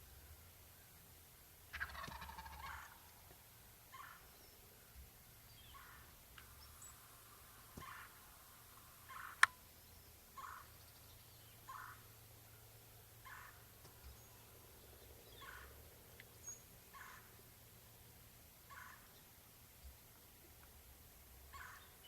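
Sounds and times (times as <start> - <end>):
turkey gobbling: 1.7 - 3.3, 3.9 - 4.3, 7.8 - 8.2, 9.1 - 9.5, 10.4 - 10.6, 11.7 - 12.0, 13.2 - 13.7, 15.4 - 15.8, 16.9 - 17.4, 18.7 - 19.1, 21.5 - 21.9
short turkey calls: 1.7 - 4.3, 5.7 - 6.9, 7.7 - 9.7, 10.3 - 10.7, 11.6 - 12.2, 13.2 - 14.2, 15.3 - 17.4, 18.6 - 19.2, 21.5 - 22.0.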